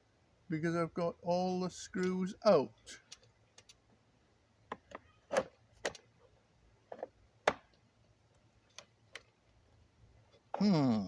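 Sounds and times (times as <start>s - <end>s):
plastic parts clicking and knocking: 4.7s - 6.1s.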